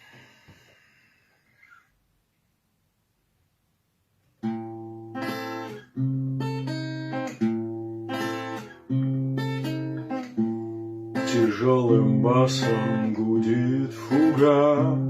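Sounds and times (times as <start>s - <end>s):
acoustic guitar strumming chords: 4.4s - 15.0s.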